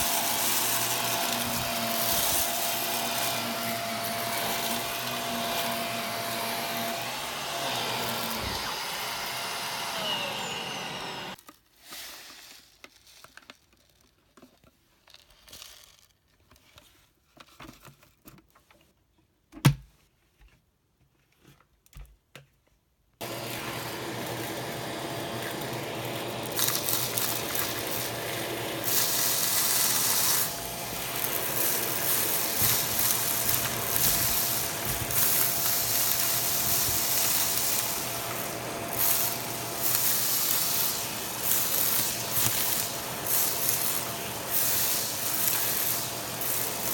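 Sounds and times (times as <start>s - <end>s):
vacuum cleaner running: 0.0s - 11.4s, 23.2s - 46.9s.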